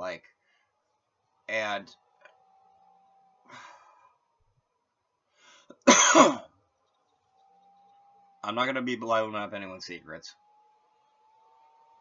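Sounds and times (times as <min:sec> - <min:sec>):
faint breath: 0:00.4 - 0:00.8, 0:03.5 - 0:04.2, 0:05.3 - 0:05.8
person coughing: 0:05.8 - 0:06.5.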